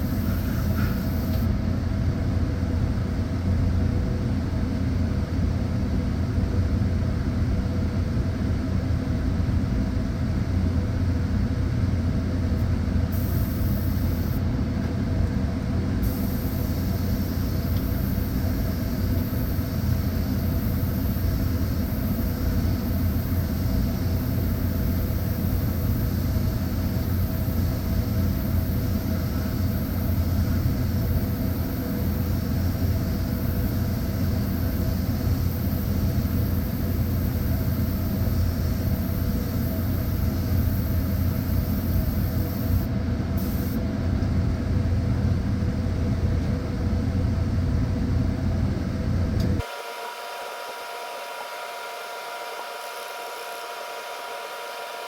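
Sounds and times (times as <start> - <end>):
high hiss of escaping air: 0.0 - 1.5, 13.1 - 14.4, 16.0 - 43.8
machine hum: 0.0 - 1.5, 13.1 - 14.9, 15.7 - 43.8, 49.6 - 55.0.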